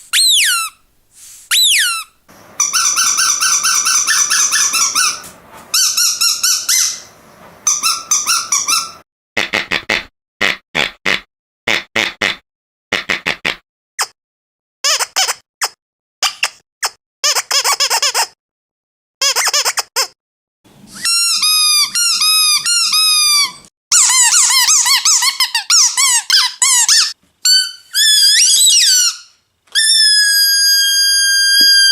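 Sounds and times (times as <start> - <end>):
dog squeaky toy squeaking: 0.1 - 0.8, 1.5 - 9.0, 20.9 - 31.9
rising and falling squeal: 1.5 - 9.0.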